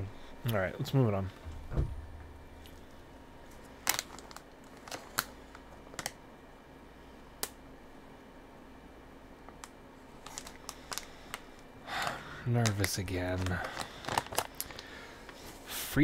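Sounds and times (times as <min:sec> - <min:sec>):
snack packaging crinkling and clicking: 0:03.5 - 0:06.2, 0:09.4 - 0:15.6.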